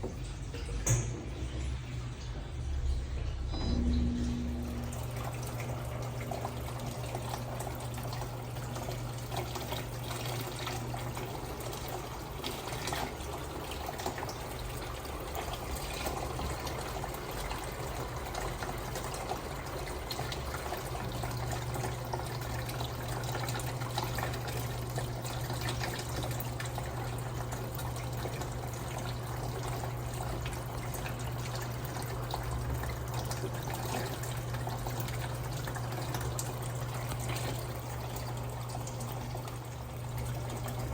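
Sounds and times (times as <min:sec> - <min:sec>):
low electric hum: 0:00.0 - 0:19.3
water trickling in washing machine: 0:00.0 - 0:40.9.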